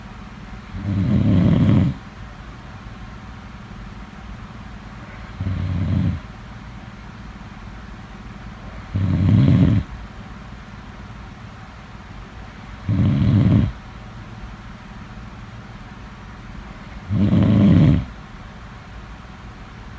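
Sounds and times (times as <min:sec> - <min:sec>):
person snoring: 0:00.8 - 0:02.0, 0:05.4 - 0:06.2, 0:08.9 - 0:09.9, 0:12.9 - 0:13.8, 0:17.0 - 0:18.1.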